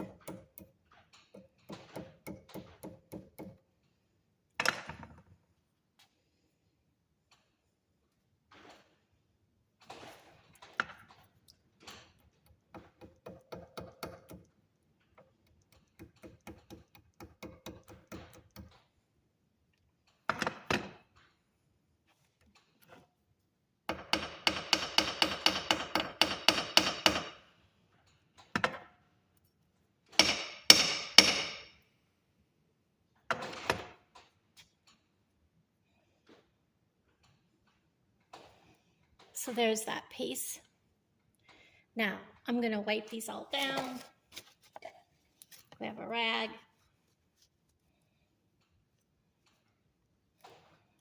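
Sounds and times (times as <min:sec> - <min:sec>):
hand tools tapping copper wire: 0:12.3 - 0:18.8.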